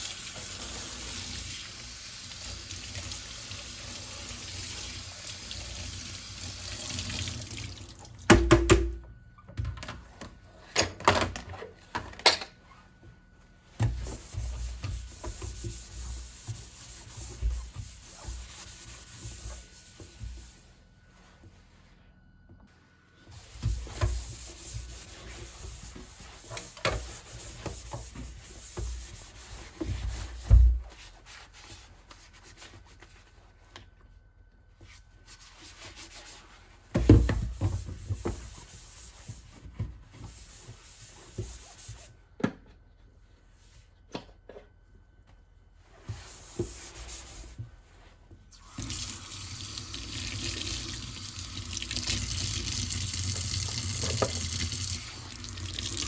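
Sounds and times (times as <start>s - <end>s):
tap water running: 0.0s - 8.4s, 48.6s - 56.0s.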